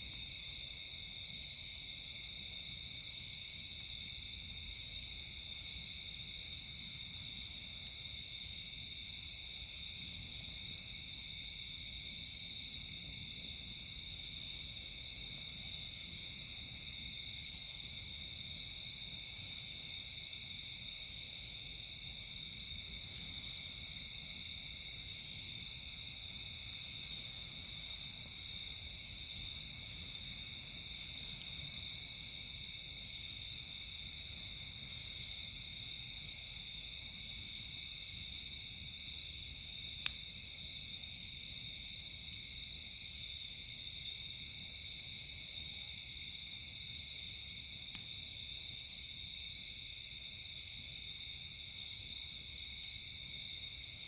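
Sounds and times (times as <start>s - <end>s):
night insects chorus: 0.0s - 54.0s.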